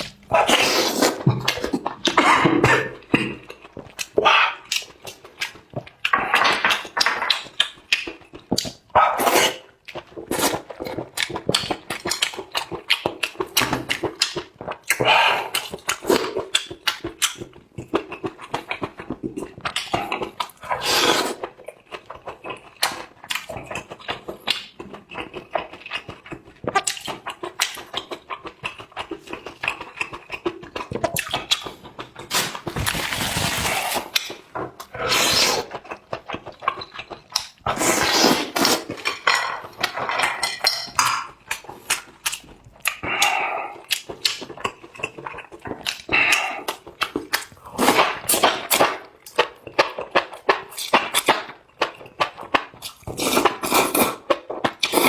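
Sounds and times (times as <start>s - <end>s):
slurping: 0.0s - 3.4s, 20.1s - 21.5s, 31.1s - 36.8s, 37.6s - 39.2s, 52.9s - 55.0s
wet chewing clicks: 0.0s - 20.7s, 21.3s - 32.3s, 34.1s - 40.4s, 41.0s - 55.0s.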